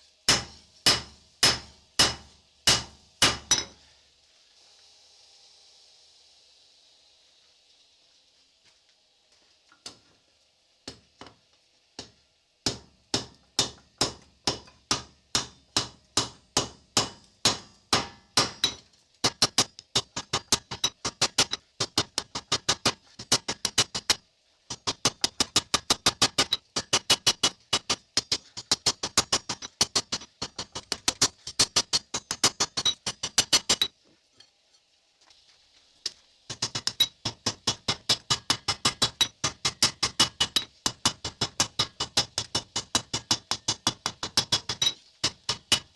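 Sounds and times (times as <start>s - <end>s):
hammer striking steel on anvil: 0.3s - 3.8s, 12.7s - 24.1s, 24.8s - 33.9s, 36.5s - 45.9s.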